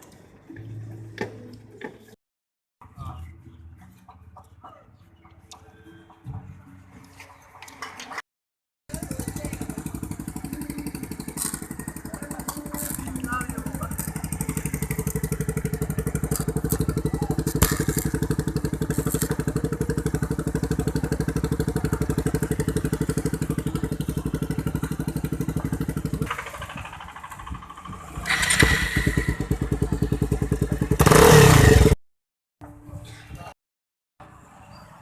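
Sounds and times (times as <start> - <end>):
motorcycle engine idling: 8.9 - 32.0
engine revving bursts: 27.5 - 30.1, 31.0 - 32.0.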